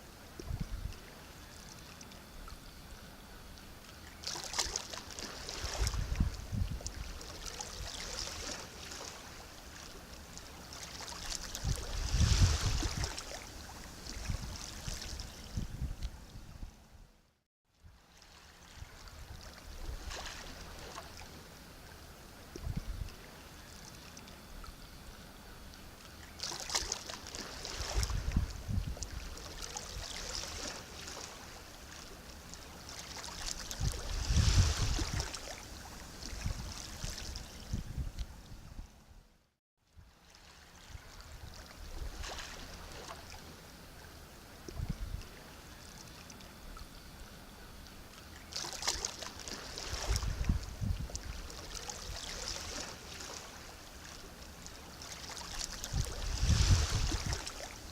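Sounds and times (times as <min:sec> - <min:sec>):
low rumble of surf: 0:00.0 - 0:57.9
sea waves lapping: 0:04.0 - 0:15.6, 0:18.0 - 0:22.5, 0:26.0 - 0:37.8, 0:40.2 - 0:46.5, 0:48.0 - 0:57.9.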